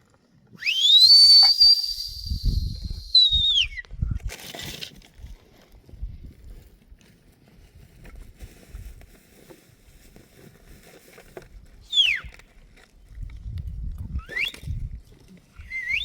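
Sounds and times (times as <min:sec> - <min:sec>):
loud whistle falling in pitch: 0:00.6 - 0:03.8, 0:11.9 - 0:12.3
low rumble of wind: 0:01.8 - 0:16.0.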